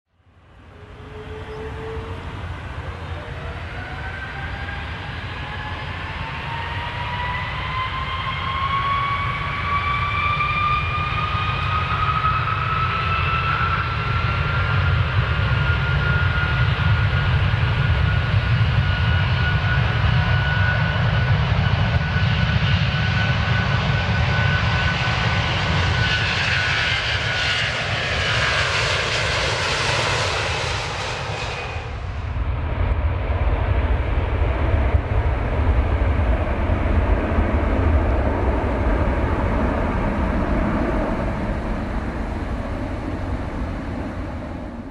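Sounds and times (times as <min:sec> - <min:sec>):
jet engines whining: 0:00.5 - 0:44.9
deep rumble: 0:28.8 - 0:44.9.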